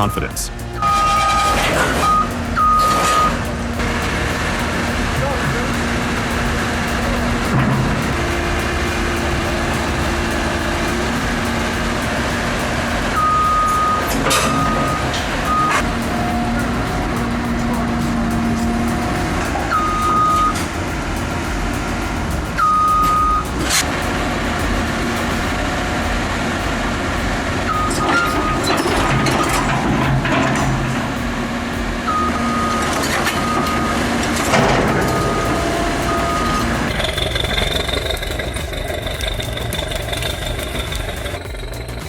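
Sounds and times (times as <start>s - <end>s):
reversing alarm beeps: 0.0s - 3.9s, 13.1s - 20.7s, 22.6s - 23.5s, 24.6s - 31.3s, 32.1s - 42.0s
diesel engine running under load: 0.0s - 42.0s
thin steady high tone: 0.0s - 42.0s.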